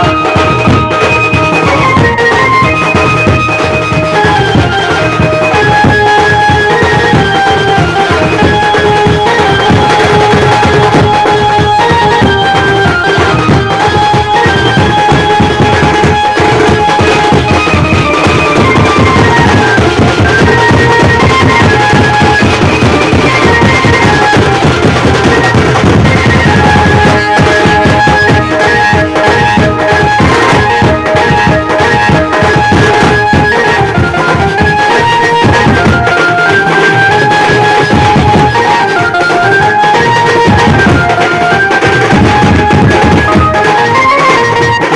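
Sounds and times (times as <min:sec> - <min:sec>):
amplified melody of held notes: 0:00.0 - 0:44.9
rapid drumming: 0:00.0 - 0:44.9.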